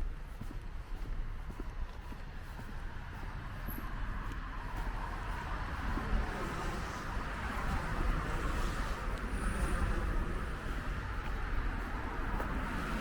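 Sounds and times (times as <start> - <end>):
car passing: 2.9 - 13.0.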